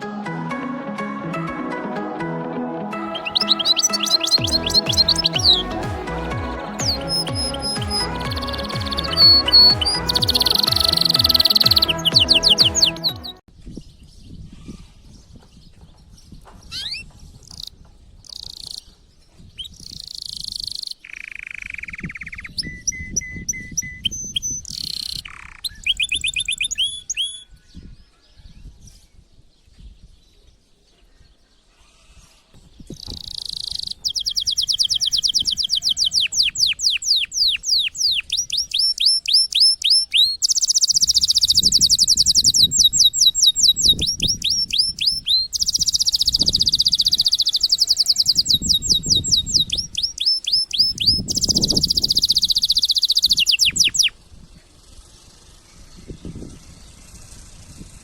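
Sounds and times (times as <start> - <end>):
canary singing: 0.0 - 13.5, 19.6 - 27.5, 32.9 - 54.2.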